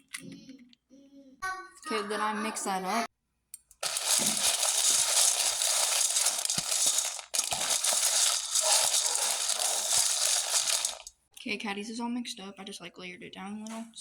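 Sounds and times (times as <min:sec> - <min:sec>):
dog kibble stirred in bowl: 0:03.8 - 0:11.1.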